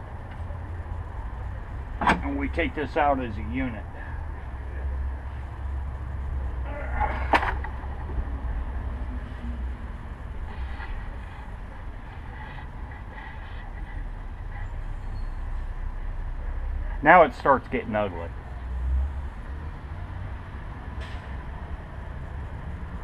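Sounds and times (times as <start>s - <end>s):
low background rumble: 0.0s - 17.1s.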